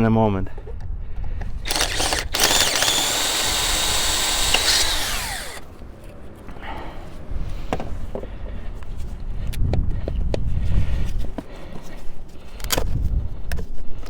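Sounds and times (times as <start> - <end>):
electric drill whining: 1.6 - 5.6.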